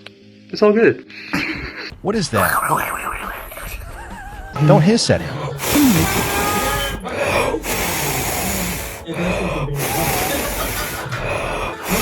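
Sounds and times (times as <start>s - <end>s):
cat hissing: 4.6s - 12.0s.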